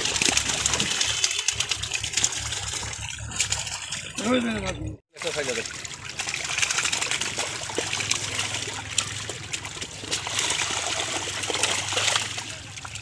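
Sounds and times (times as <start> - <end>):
water trickling and splashing: 0.0 - 13.0.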